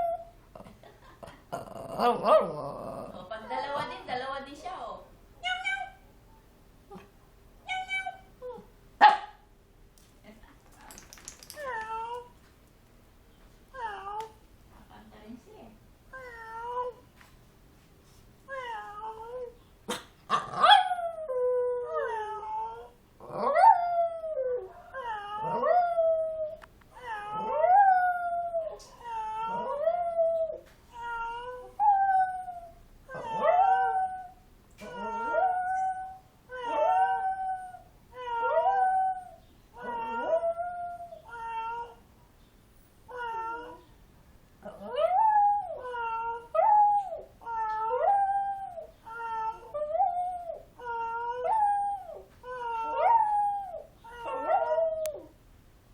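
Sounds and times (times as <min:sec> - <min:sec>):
dog howling: 0:44.7 - 0:55.3.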